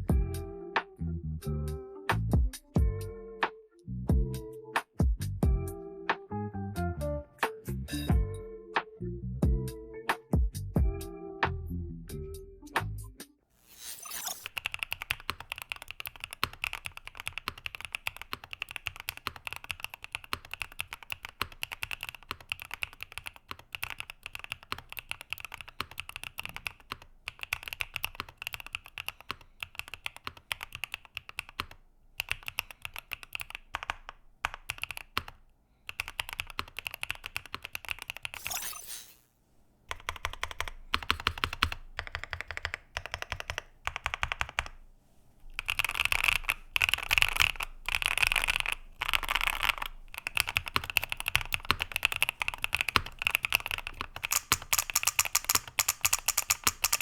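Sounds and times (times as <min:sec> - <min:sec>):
mechanical keyboard typing: 0:13.8 - 0:39.2, 0:39.9 - 0:44.8, 0:45.5 - 0:57.0.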